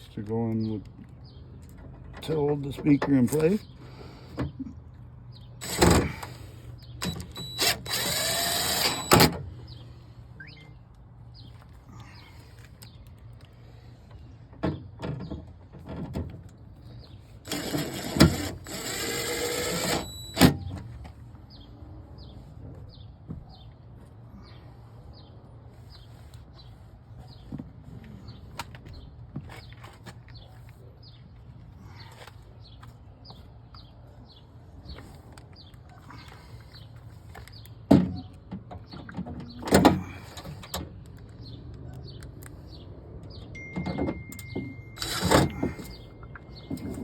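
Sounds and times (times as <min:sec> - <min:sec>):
power drill driving screws: 0:05.6 - 0:06.4, 0:07.0 - 0:09.4, 0:17.5 - 0:20.6, 0:45.0 - 0:46.0.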